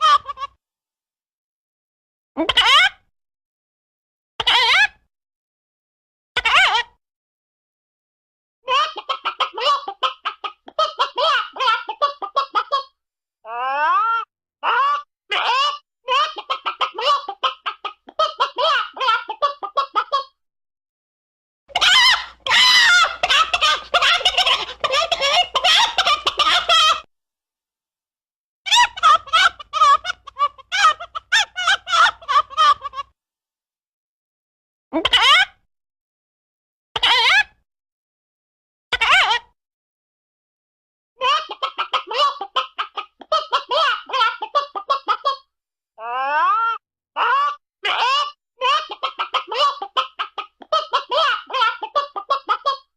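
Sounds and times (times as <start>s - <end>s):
chicken clucking: 21.7s - 27.0s, 41.4s - 45.4s, 48.2s - 52.9s
warbling gobble-like fowl calls: 21.7s - 27.0s.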